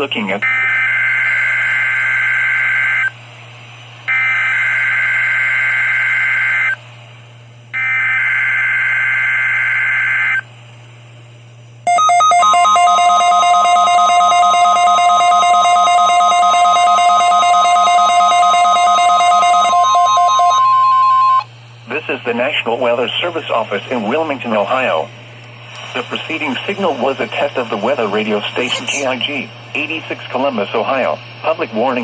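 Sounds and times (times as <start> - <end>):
pulsing warning alarm tone: 0.4 - 3.2, 4.1 - 6.8, 7.8 - 10.5, 11.9 - 21.5.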